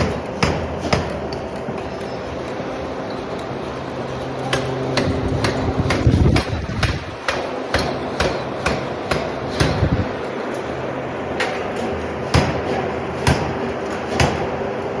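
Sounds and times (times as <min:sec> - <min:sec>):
hammer striking metal: 0:04.4 - 0:09.9, 0:12.3 - 0:13.5.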